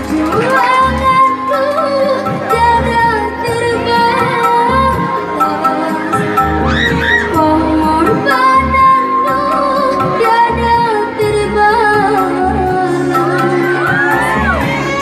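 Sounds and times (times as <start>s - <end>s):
musical accompaniment with low beat: 0.0s - 15.0s.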